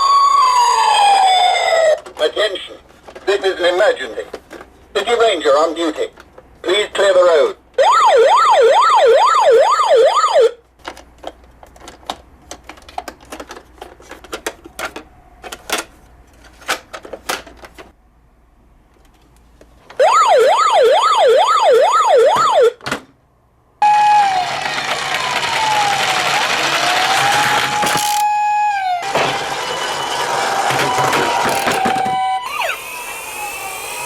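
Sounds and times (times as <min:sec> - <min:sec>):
toy siren wailing: 0:00.0 - 0:02.0, 0:20.0 - 0:22.8, 0:23.8 - 0:34.0
noisy slowly falling tone: 0:23.8 - 0:27.8.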